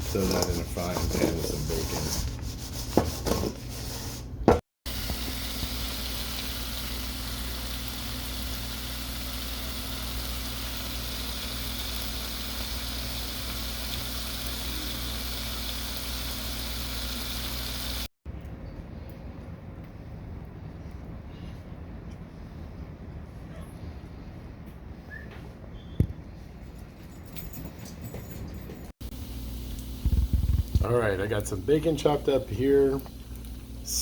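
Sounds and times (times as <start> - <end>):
bacon sizzling in a pan: 4.9 - 18.1.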